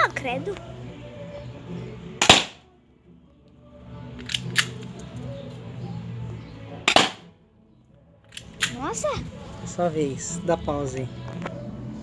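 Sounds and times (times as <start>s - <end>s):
airsoft gun shots: 2.2s - 2.6s, 6.9s - 7.3s.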